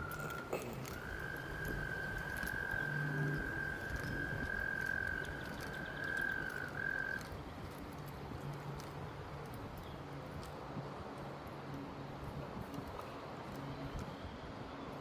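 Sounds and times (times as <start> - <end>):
frog trilling: 0.0 - 7.3.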